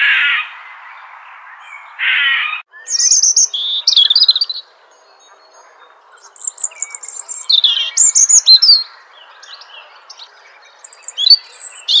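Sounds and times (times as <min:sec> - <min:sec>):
small bird chirping trills: 0:02.6 - 0:12.0.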